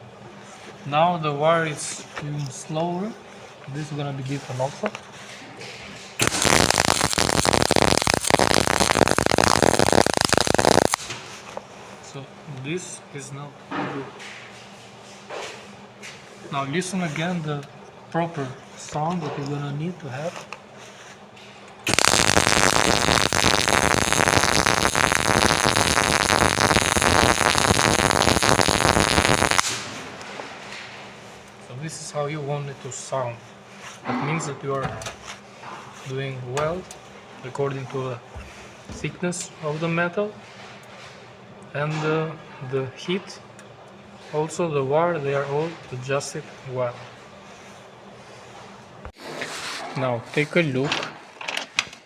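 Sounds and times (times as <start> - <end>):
welding arc crackling: 6.2 - 11.2, 21.8 - 30.0.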